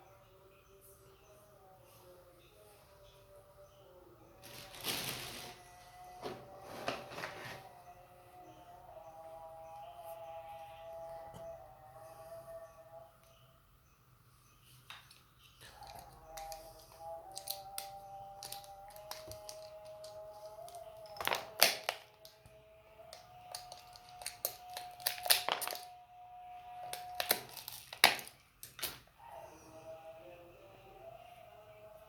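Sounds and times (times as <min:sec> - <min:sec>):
faint background music: 0:00.0 - 0:32.0
tools clicking on plastic casing: 0:17.3 - 0:22.4, 0:23.1 - 0:25.8.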